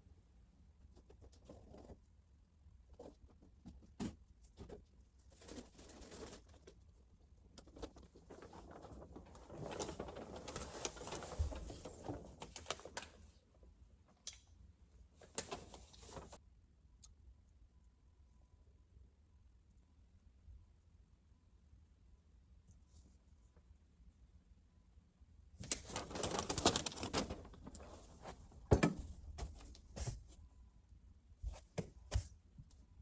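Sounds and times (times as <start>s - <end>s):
rustling: 2.8s - 6.9s, 7.6s - 13.2s, 15.2s - 16.4s, 25.6s - 30.5s.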